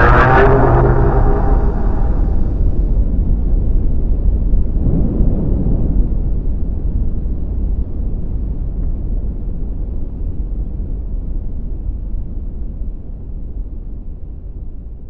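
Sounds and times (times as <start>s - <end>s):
deep explosion-like rumble: 0.0s - 13.3s.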